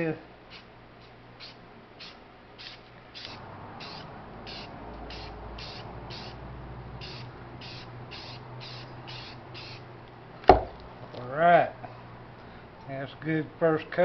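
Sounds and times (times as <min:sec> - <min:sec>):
spray paint hissing: 0:00.5 - 0:06.4, 0:07.0 - 0:09.9.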